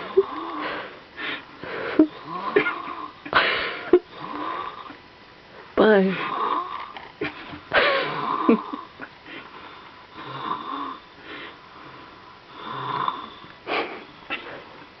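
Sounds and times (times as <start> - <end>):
baby snoring: 10.1 - 11.1, 11.8 - 13.4.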